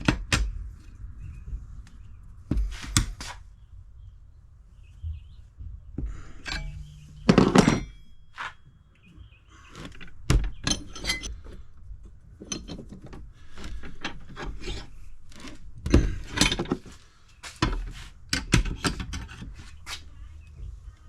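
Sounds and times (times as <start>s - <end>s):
metal scraping and rubbing: 6.3s - 8.6s, 9.7s - 11.7s, 12.4s - 17.0s.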